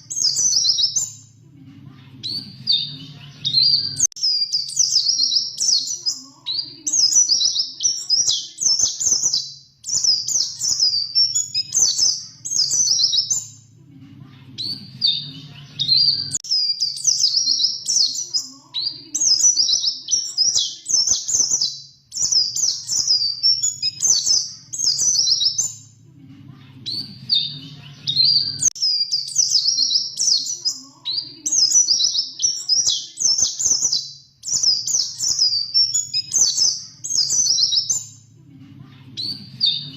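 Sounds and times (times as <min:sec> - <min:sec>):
bird twittering: 0:02.2 - 0:13.6, 0:14.6 - 0:25.9
faint low hum: 0:25.4 - 0:28.5.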